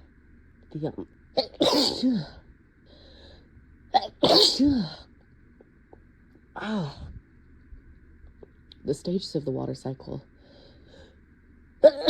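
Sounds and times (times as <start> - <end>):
person sneezing: 1.4 - 2.4, 4.0 - 5.1
faint breath: 2.8 - 3.6, 10.4 - 11.3.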